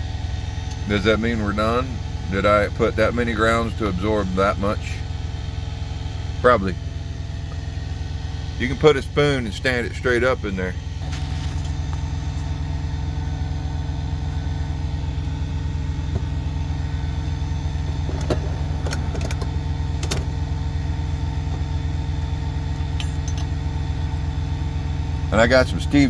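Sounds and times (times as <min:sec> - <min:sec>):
diesel truck engine idling: 0:00.0 - 0:26.0
light metallic clinks: 0:22.8 - 0:23.6.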